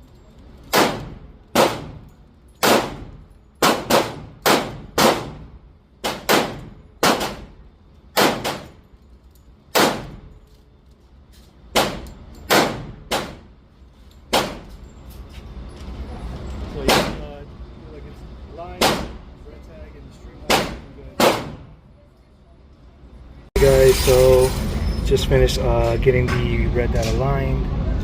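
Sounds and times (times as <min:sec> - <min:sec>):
handgun shots: 0:00.7 - 0:02.0, 0:02.6 - 0:05.4, 0:06.0 - 0:07.5, 0:08.2 - 0:08.7, 0:09.7 - 0:10.2, 0:11.8 - 0:13.4, 0:18.8 - 0:19.2, 0:20.5 - 0:21.7.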